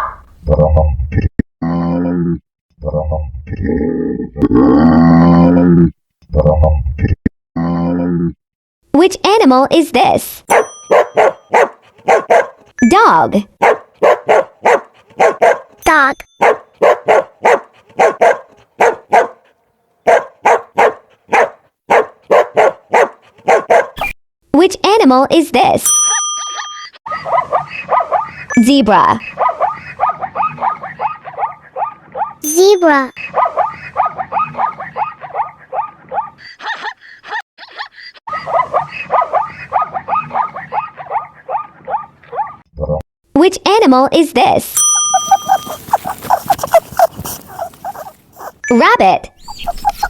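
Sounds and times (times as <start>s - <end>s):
dog barking: 10.5s - 12.7s, 13.6s - 15.8s, 16.4s - 24.0s, 27.1s - 28.5s, 29.2s - 32.4s, 33.2s - 42.6s, 45.2s - 48.6s
zebra barking: 16.4s - 19.4s.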